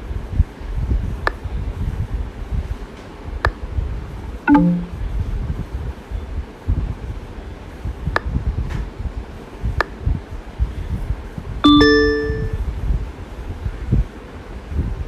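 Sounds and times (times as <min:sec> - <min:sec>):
two-note chime: 0:04.5 - 0:05.0, 0:11.6 - 0:12.6.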